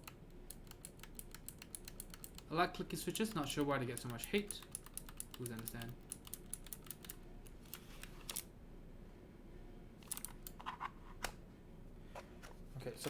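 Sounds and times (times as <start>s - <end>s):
mechanical keyboard clicks: 0.0s - 2.5s, 3.2s - 8.4s, 10.1s - 10.6s.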